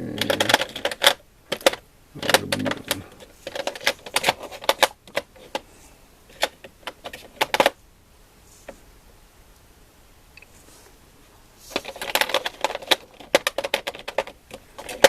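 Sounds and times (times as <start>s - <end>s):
metal tools clicking on plastic case: 0.1s - 5.6s, 6.3s - 7.8s, 11.7s - 15.0s.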